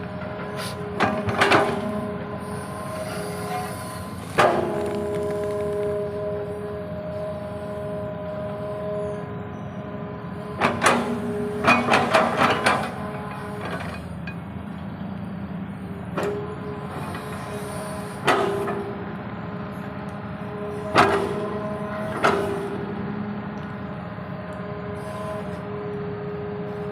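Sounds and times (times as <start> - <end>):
excavator engine with hydraulic whine: 0.0 - 26.9.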